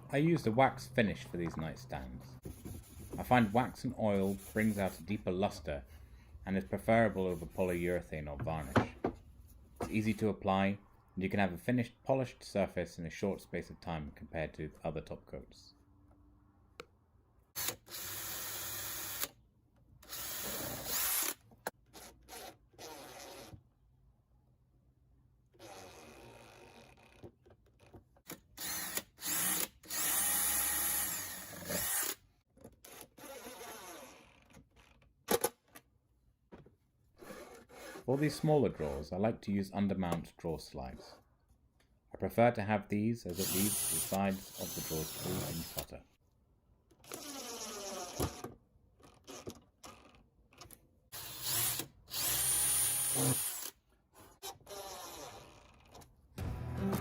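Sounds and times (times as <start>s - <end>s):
cordless drill driving screws: 17.6s - 19.4s, 20.0s - 21.4s, 28.6s - 32.2s, 32.8s - 34.4s, 43.3s - 45.9s, 47.0s - 48.5s, 51.2s - 53.8s, 54.4s - 56.0s
power drill running: 51.2s - 53.7s.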